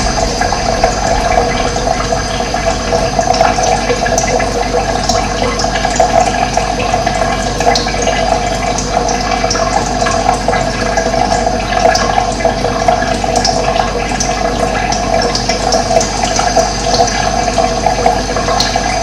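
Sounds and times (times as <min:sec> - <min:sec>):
stream flowing: 0:00.0 - 0:06.1.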